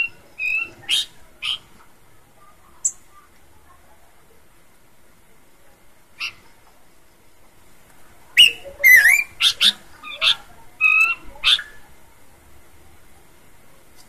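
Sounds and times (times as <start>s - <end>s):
bird singing whistled notes: 0.0s - 1.1s, 8.4s - 9.7s.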